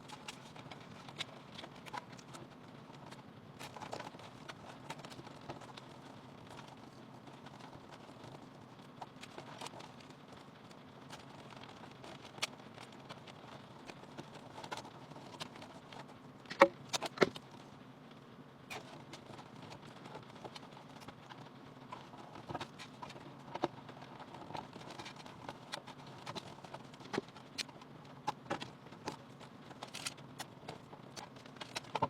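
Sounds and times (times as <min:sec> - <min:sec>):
faint low hum: 0:00.0 - 0:32.0.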